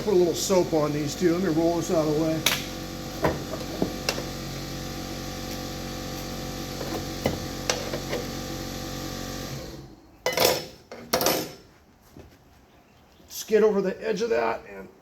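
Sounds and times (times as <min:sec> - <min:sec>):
electric motor humming: 0:00.0 - 0:10.0.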